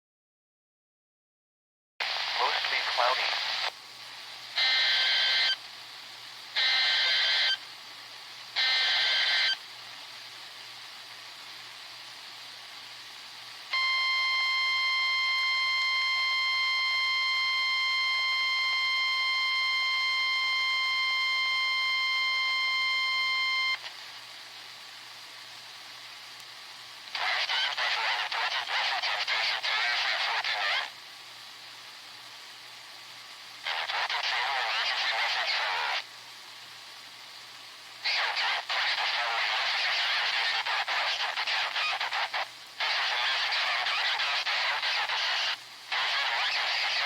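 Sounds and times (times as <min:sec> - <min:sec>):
radio hiss: 0:02.0 - 0:47.0
harsh screeching data bursts: 0:04.6 - 0:05.6, 0:06.6 - 0:07.6, 0:08.6 - 0:09.6, 0:27.1 - 0:30.9, 0:33.7 - 0:36.0, 0:38.0 - 0:47.0.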